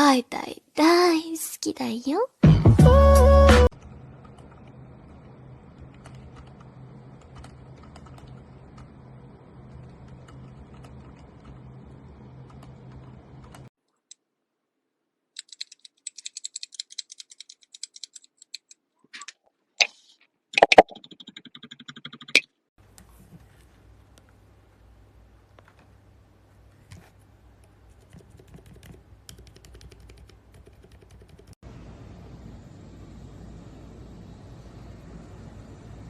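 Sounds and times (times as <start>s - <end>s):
muted keyboard keystrokes: 15.4s - 18.8s, 28.0s - 31.6s
low steady hum: 31.6s - 36.0s.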